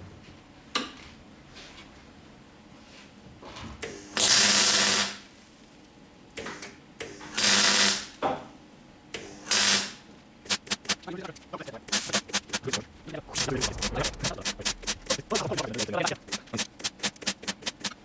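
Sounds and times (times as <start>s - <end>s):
welder crackling buzz: 10.5s - 18.0s.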